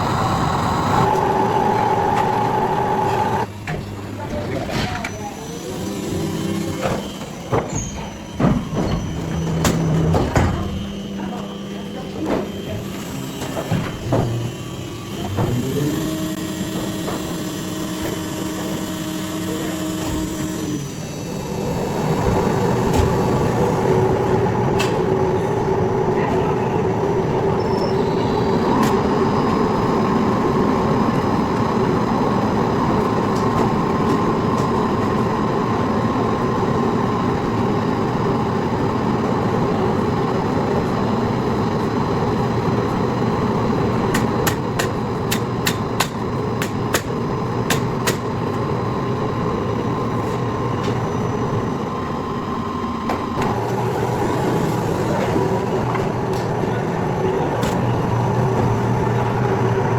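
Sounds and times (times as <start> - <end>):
motor spinning up: 0.0 - 3.5, 12.5 - 30.4
machine humming steadily: 0.0 - 59.9.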